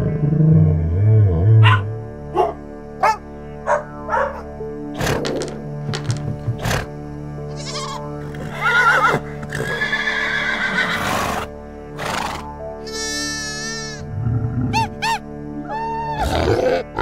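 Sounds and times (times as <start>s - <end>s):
music backing track: 0.0s - 17.0s
farm animal calls: 1.6s - 4.4s, 7.5s - 17.0s.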